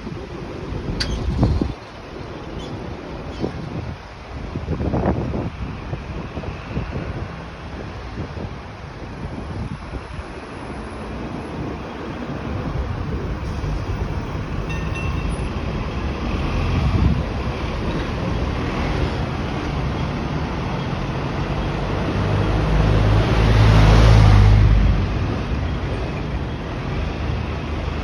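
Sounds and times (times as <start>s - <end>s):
street traffic rumble: 0.0s - 28.0s.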